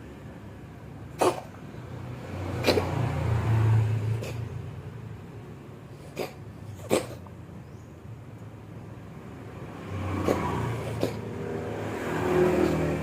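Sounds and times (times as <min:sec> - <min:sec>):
cat coughing: 0:01.0 - 0:01.8, 0:02.5 - 0:03.1, 0:04.1 - 0:04.6, 0:06.0 - 0:07.4, 0:10.2 - 0:11.4.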